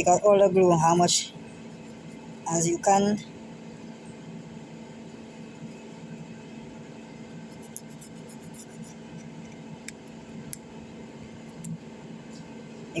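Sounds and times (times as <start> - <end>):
steady low hum: 0.0 - 13.0
small sharp ticks: 7.6 - 10.6.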